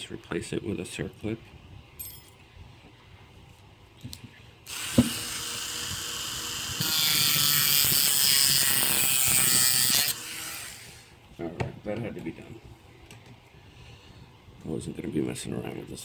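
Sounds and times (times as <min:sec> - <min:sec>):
rotary tool cutting metal: 0:04.7 - 0:11.0.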